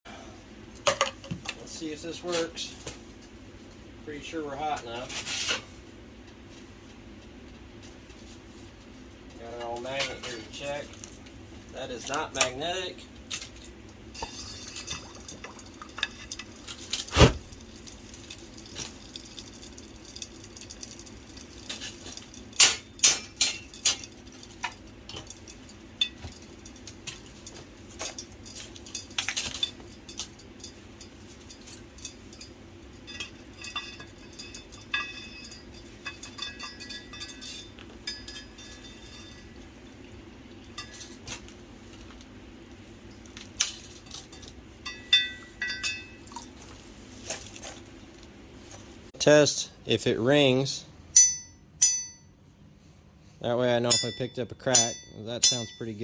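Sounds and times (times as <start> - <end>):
faint liquid sounds: 13.2 - 35.6, 45.9 - 49.1
metallic clinks and knocks: 14.2 - 39.7, 43.3 - 46.6, 51.1 - 52.4.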